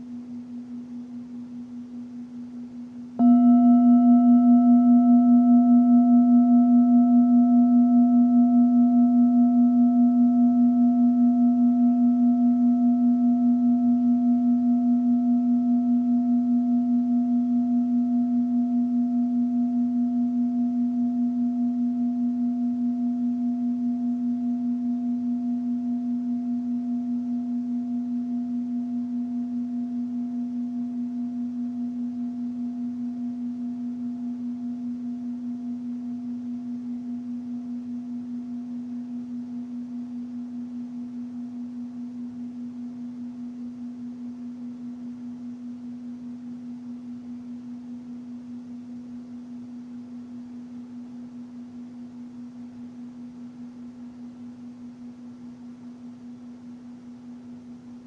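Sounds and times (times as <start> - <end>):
singing bowl ringing: 3.2 - 49.6.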